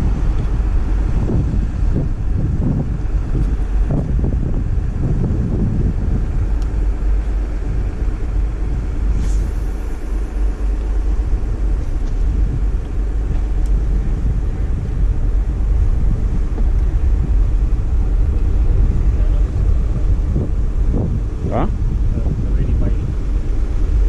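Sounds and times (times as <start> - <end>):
wind buffeting microphone: 0.0 - 24.0
brief hiss: 9.1 - 10.1.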